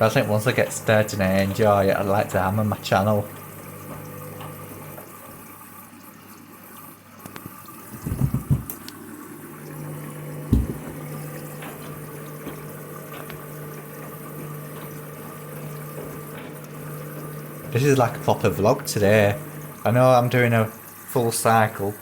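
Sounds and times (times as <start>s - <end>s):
washing machine filling with water: 0.0s - 22.0s
loud knocks: 8.0s - 8.7s, 10.5s - 11.0s.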